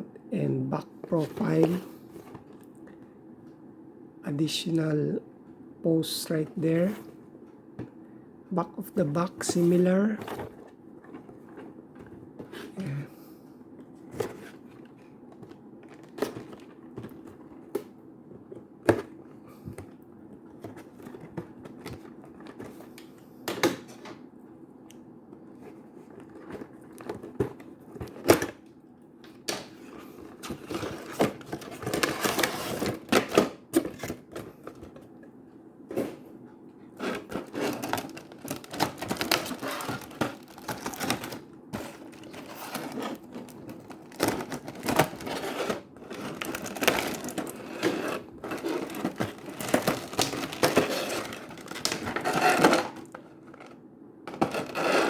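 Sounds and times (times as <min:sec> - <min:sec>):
plastic wrap crinkling: 0:37.0 - 0:53.2.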